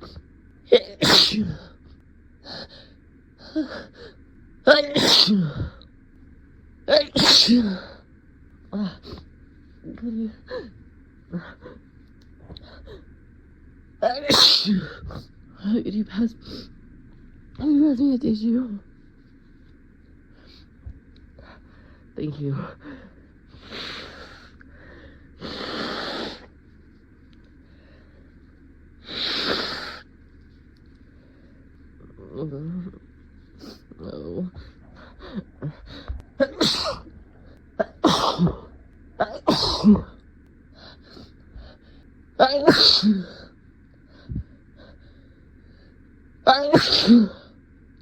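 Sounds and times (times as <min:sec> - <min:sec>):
person sneezing: 0:00.8 - 0:01.7, 0:04.8 - 0:05.8, 0:07.1 - 0:07.9, 0:14.3 - 0:15.2, 0:36.4 - 0:37.1, 0:37.8 - 0:40.2, 0:42.6 - 0:43.5, 0:46.6 - 0:47.5
person blowing nose: 0:29.1 - 0:30.0.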